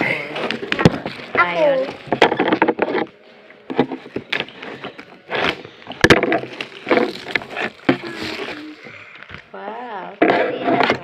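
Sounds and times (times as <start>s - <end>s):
paper and packaging rustling: 0.1s - 9.5s.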